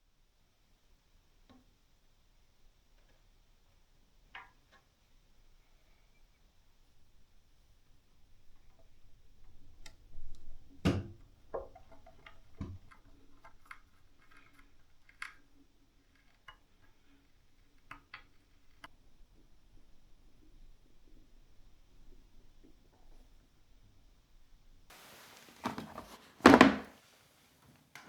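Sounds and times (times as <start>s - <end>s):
clicks and knocks of hard objects: 24.9s - 27.0s
thump: 24.9s - 27.0s.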